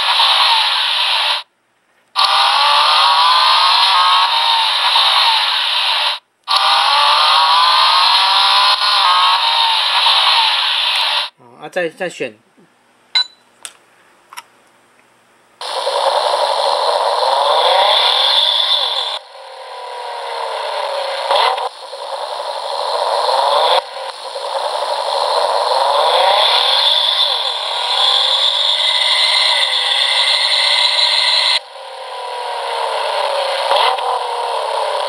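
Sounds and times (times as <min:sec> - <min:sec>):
buzzy electronic vehicle sound: 0:02.2 - 0:11.3, 0:15.6 - 0:35.0
short selection beeps: 0:13.2 - 0:13.4.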